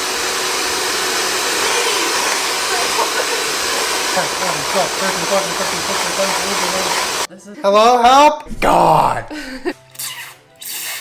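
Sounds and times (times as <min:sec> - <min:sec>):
blower motor rushing air: 0:00.0 - 0:07.3.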